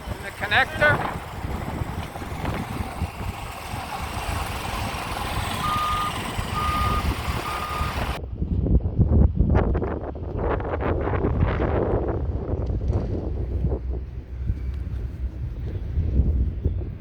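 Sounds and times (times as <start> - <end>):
rumbling outdoor noise: 0.0 - 17.0
wind buffeting microphone: 0.0 - 17.0
backup alarm beeping: 4.8 - 8.2.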